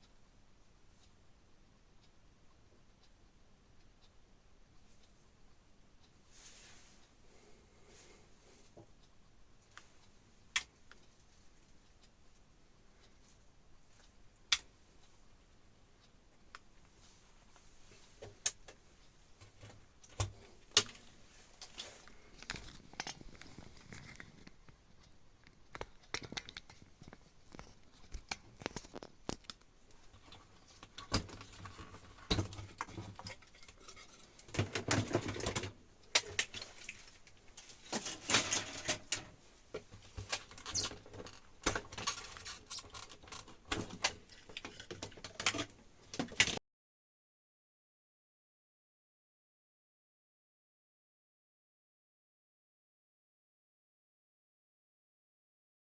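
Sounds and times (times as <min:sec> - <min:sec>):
small hard objects clicking and scraping: 0:20.0 - 0:24.8, 0:25.4 - 0:39.2, 0:40.1 - 0:46.6.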